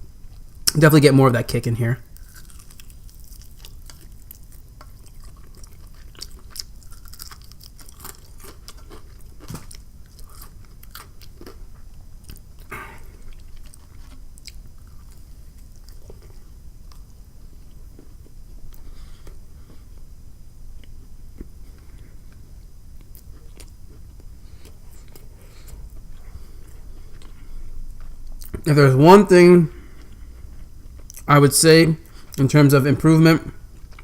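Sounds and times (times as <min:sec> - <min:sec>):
fried breading crunching: 0:02.1 - 0:11.6.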